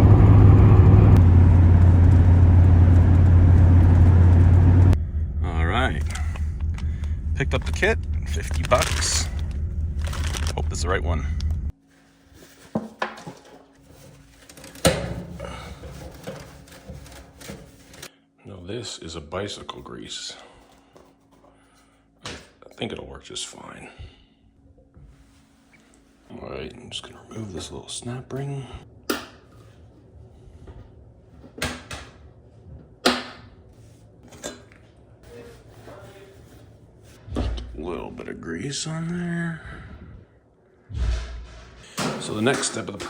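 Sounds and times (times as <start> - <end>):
rustling: 6.1 - 18.1
small clatters of tools: 12.6 - 18.1.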